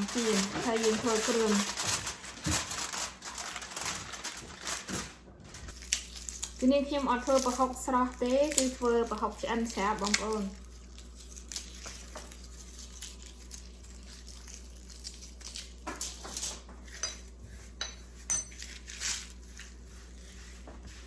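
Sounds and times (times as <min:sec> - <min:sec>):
dishes clinking: 0:17.0 - 0:18.7.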